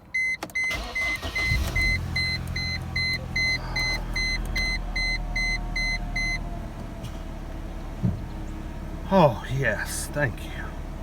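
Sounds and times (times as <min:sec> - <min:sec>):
car warning chime beeping: 0:00.0 - 0:06.5.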